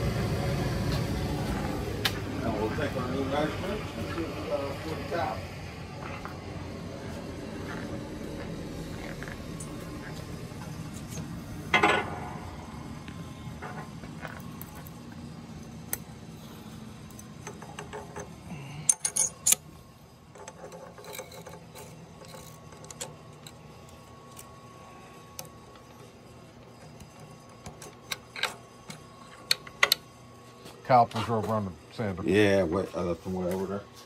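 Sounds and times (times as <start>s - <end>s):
low steady hum: 0.0s - 34.0s
metal tools clinking: 17.4s - 19.6s.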